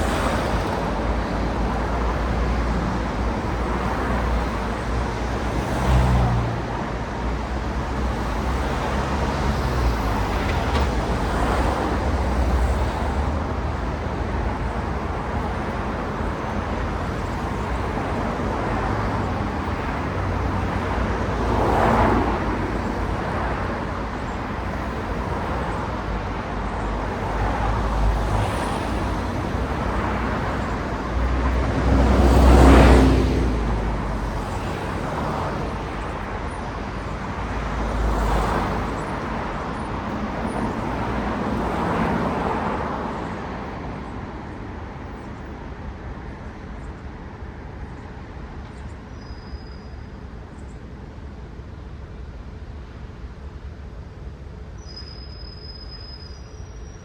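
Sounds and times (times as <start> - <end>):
cars passing: 0.0 - 48.6
louder vehicle passing: 26.9 - 36.0.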